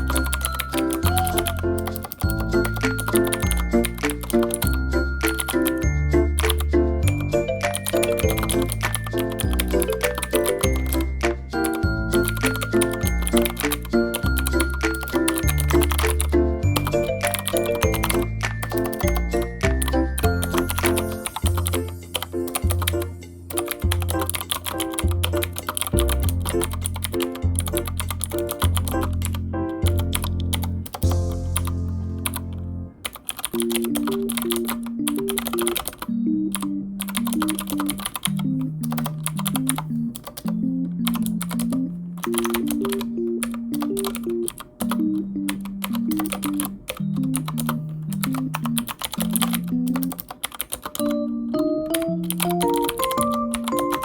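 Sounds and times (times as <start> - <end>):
light background music: 0.0 - 54.0
rapid keyboard typing: 0.0 - 54.0.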